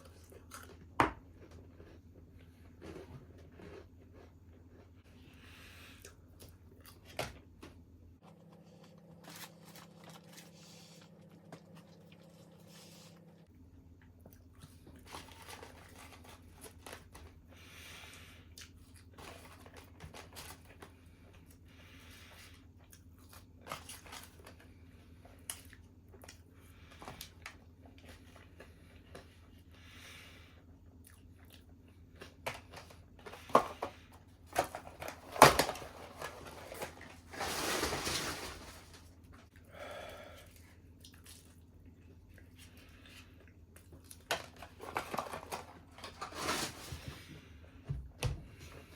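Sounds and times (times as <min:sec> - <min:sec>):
person chewing food: 0:00.0 - 0:07.5, 0:30.8 - 0:32.4, 0:40.4 - 0:44.3.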